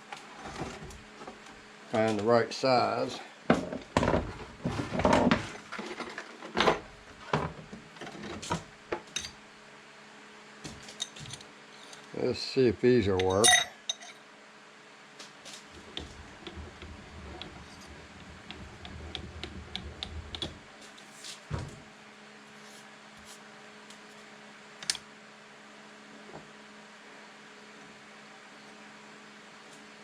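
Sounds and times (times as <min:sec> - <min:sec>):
steady low hum: 0:08.5 - 0:30.0.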